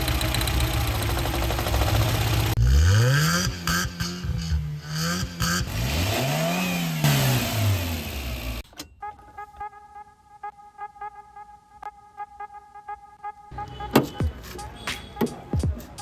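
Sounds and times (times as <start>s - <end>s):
car engine running rough and revving: 0.0s - 8.6s.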